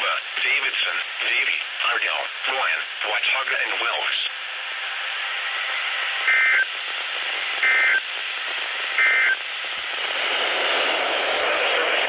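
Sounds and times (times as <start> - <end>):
radio static hiss: 0.0 - 12.0
high data-tone bursts: 6.3 - 6.7, 7.6 - 8.0, 9.0 - 9.4.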